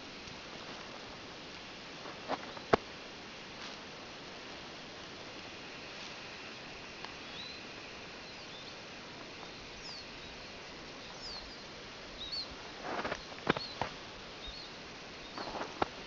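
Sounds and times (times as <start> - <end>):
crunching footsteps: 0.0 - 7.2, 12.6 - 14.7, 15.3 - 16.0
small birds chirping: 2.1 - 2.8, 6.0 - 16.0.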